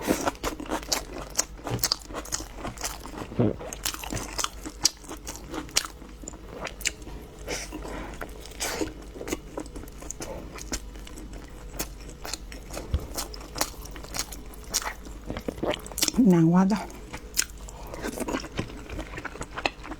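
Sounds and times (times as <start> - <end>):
person chewing crunchy food: 0.0 - 19.9.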